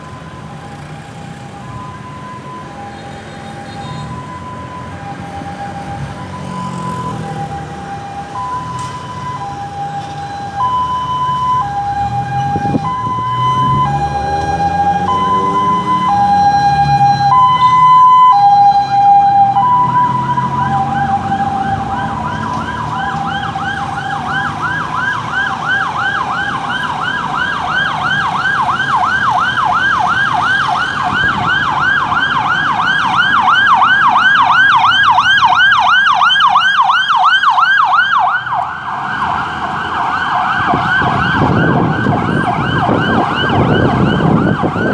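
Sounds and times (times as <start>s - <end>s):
ambulance siren: 0.0s - 44.9s
road noise: 0.0s - 44.9s
vehicle engine: 2.5s - 36.2s.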